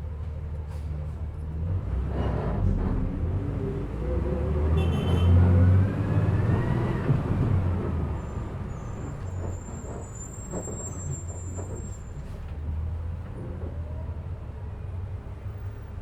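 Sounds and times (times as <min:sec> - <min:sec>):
bus engine droning: 0:00.0 - 0:16.0.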